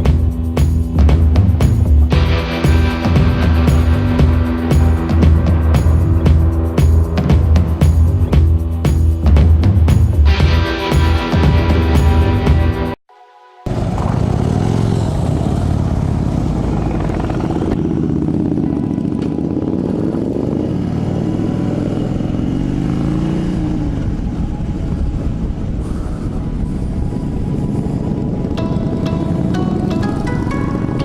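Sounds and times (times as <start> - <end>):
motorcycle engines revving: 0.0 - 12.7, 13.7 - 25.7.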